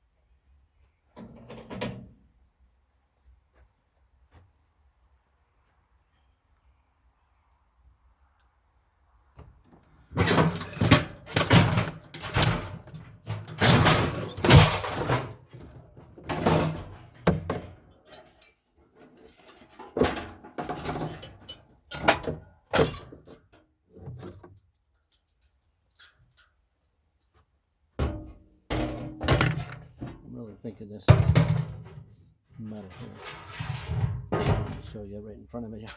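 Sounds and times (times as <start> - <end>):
refrigerator parts being pulled apart: 10.1 - 17.8, 32.8 - 35.0.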